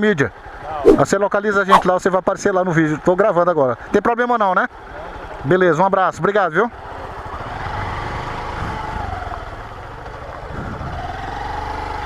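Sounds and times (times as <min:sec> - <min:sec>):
motorcycle engine riding off: 0:06.8 - 0:12.0.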